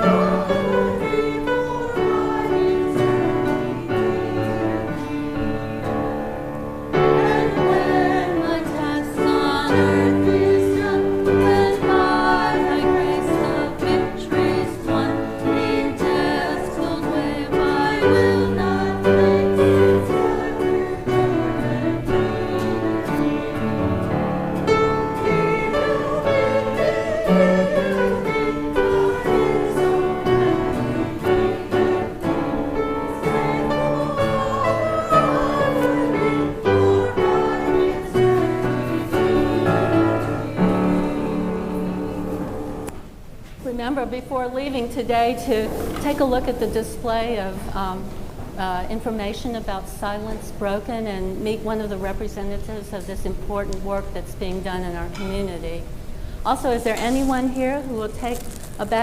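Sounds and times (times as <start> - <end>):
congregation singing a hymn: 0.0 - 42.9.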